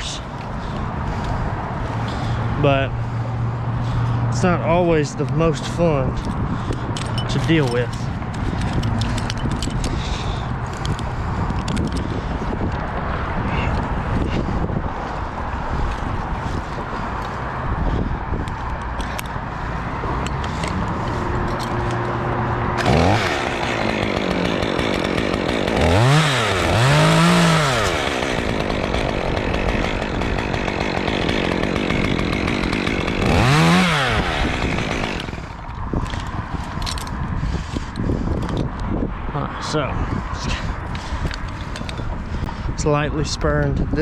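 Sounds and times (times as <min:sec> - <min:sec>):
chainsaw revving: 0:18.8 - 0:36.2.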